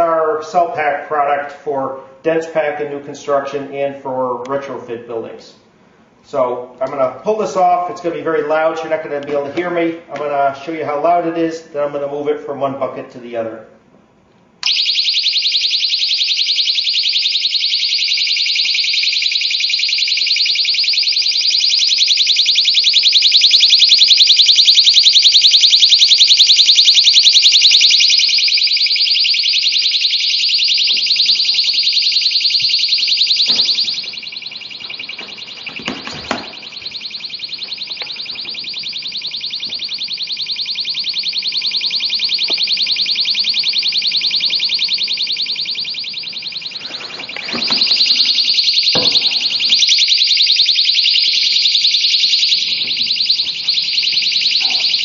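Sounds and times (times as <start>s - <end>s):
safety alarm warbling shriek: 14.6s - 55.0s
knocks: 33.4s - 34.1s, 35.1s - 36.6s, 48.9s - 49.5s.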